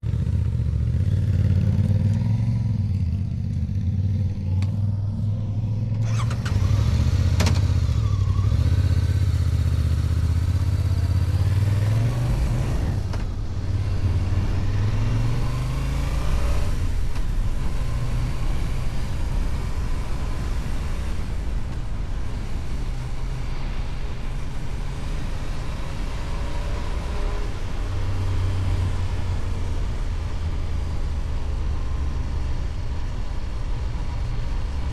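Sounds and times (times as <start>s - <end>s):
motorcycle engine running: 0.0s - 8.0s
road and wind noise: 0.0s - 34.9s.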